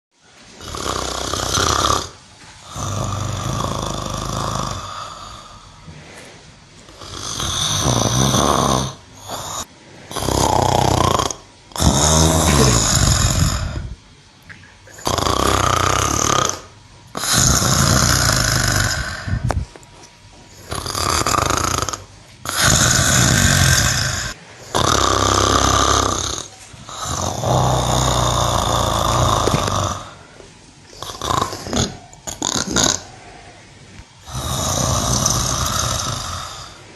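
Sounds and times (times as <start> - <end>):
cow snoring: 0.6 - 14.0, 14.9 - 19.6, 20.5 - 36.9.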